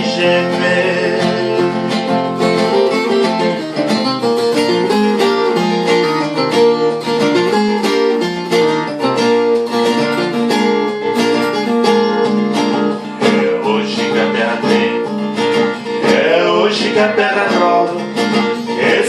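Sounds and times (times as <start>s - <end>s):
plucked guitar: 0.0s - 19.0s.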